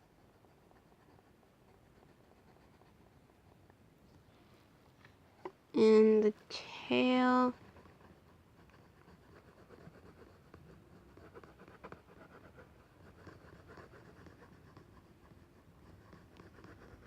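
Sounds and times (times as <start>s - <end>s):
marker scratching on paper: 7.0s - 17.0s.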